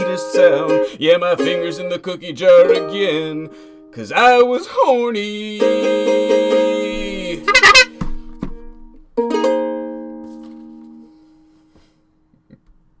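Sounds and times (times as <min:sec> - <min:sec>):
knocks: 0:07.2 - 0:09.0
loud honk: 0:07.3 - 0:08.0.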